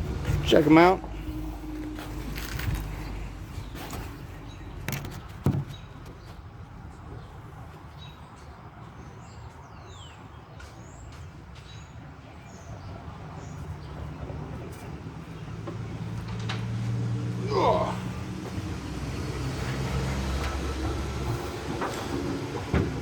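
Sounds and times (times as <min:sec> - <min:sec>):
knocks and clicks: 0:04.8 - 0:06.4.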